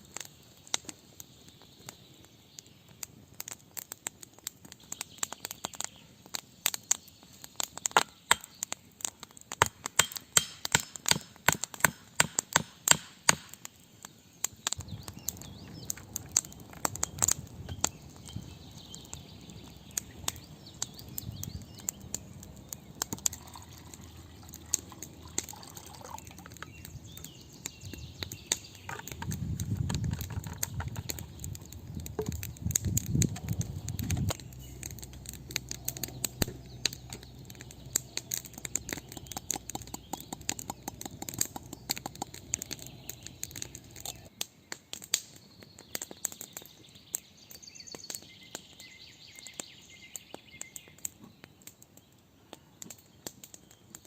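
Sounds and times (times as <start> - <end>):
campfire crackling and popping: 0.0 - 54.0
low rumble: 29.3 - 38.4.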